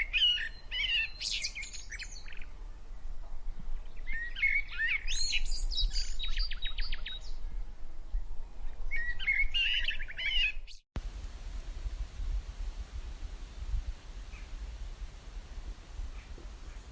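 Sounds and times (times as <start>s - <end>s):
songbird whistling and trilling: 0.0s - 2.5s, 4.0s - 7.3s, 8.9s - 10.8s
low background rumble: 11.0s - 16.9s
steady hiss: 11.0s - 16.9s.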